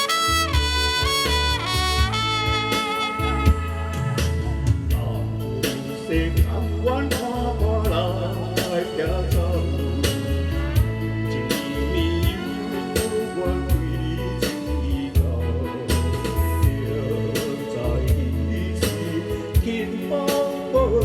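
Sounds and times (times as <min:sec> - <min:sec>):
guitar-like melody: 0:00.0 - 0:04.8
held trumpet note: 0:00.0 - 0:05.2
pulsing bass line: 0:00.0 - 0:05.6, 0:06.2 - 0:12.6.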